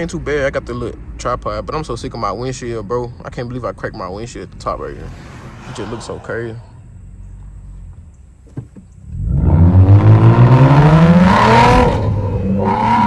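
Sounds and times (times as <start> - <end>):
car engine revving: 4.2 - 8.3, 8.9 - 13.0.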